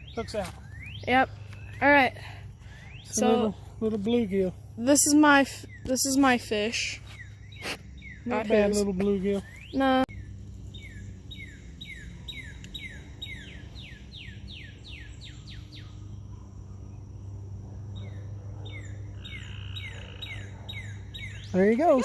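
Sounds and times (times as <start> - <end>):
bird whistling song: 0.0 - 1.8, 5.5 - 16.1, 18.0 - 22.0
steady low hum: 0.0 - 22.0.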